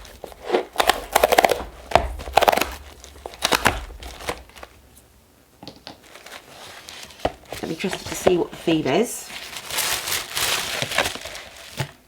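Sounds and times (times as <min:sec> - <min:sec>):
cardboard box and paper rustling: 0:06.0 - 0:12.0.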